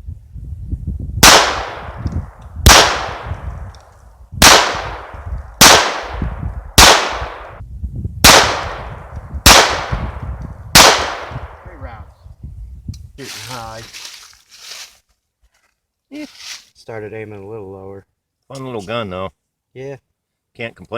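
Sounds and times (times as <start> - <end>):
pistol shots with echo: 1.2 - 2.0, 2.6 - 3.4, 4.4 - 7.6, 8.2 - 11.6.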